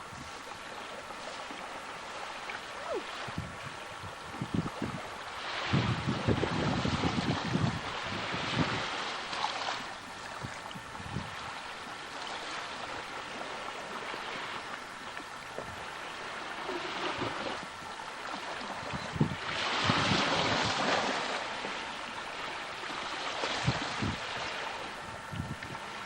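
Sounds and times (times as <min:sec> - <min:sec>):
wind on microphone: 0:02.8 - 0:09.1, 0:10.2 - 0:11.6, 0:18.6 - 0:21.3, 0:23.4 - 0:26.0.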